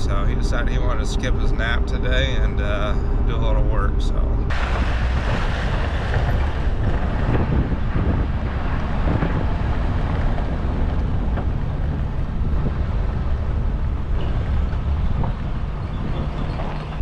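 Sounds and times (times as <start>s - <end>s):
truck engine and road rumble: 0.0s - 17.0s
wind noise on microphone: 0.0s - 17.0s.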